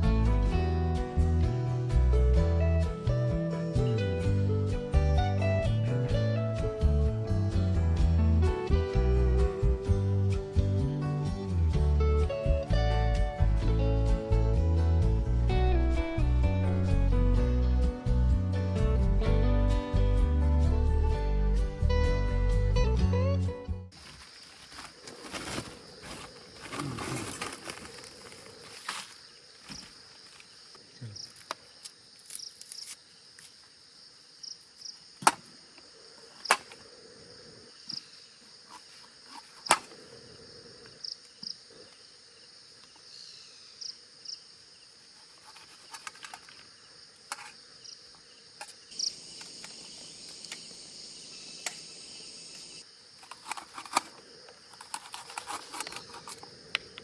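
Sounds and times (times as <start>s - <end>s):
insects chirring: 23.9s - 57.0s.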